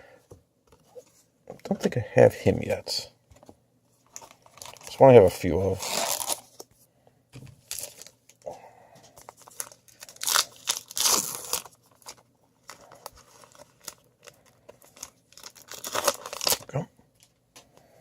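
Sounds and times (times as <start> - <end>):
wrapper tearing and crinkling: 4.2 - 5.1, 5.7 - 6.6, 7.6 - 8.2, 9.4 - 16.7.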